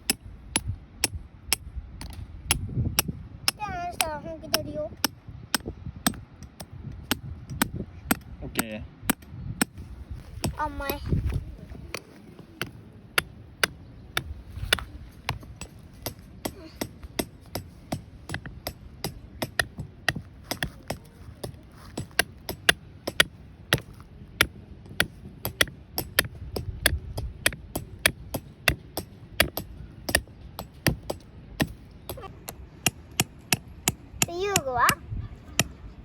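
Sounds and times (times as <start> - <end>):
hammer striking tent stake: 12.6 - 34.7.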